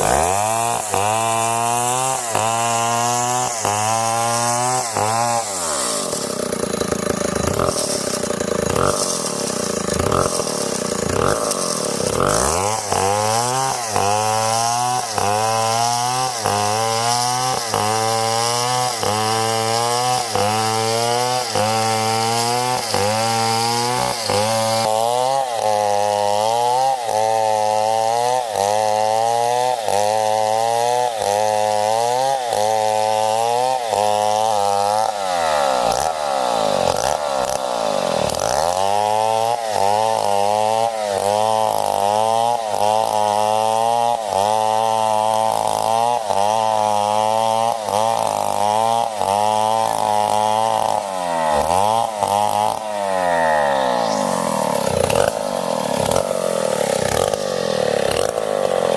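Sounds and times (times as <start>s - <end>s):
chainsaw cutting under load: 0.0s - 58.9s.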